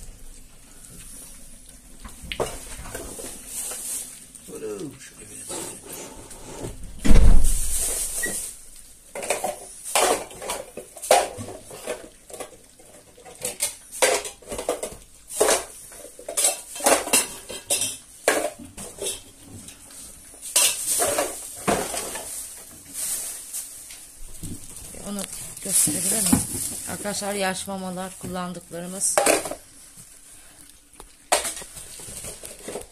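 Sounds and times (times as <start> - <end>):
metal bowls and cans clattering: 9.1 - 19.8, 20.4 - 23.2, 24.5 - 29.7, 31.3 - 32.9.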